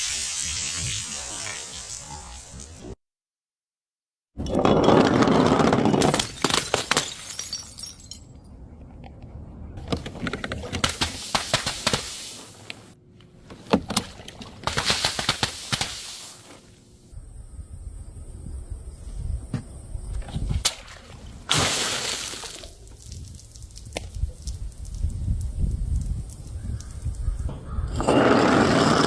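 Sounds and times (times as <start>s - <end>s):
bottles smashing: 4.4s - 8.3s
glass fragments clinking: 6.2s - 8.4s.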